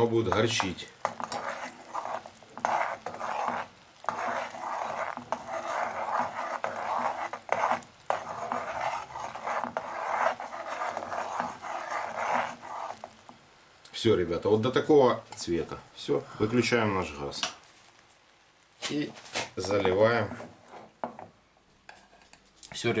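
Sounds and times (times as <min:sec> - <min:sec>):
caramel rasping in saucepan: 0:00.0 - 0:13.5, 0:19.5 - 0:21.3.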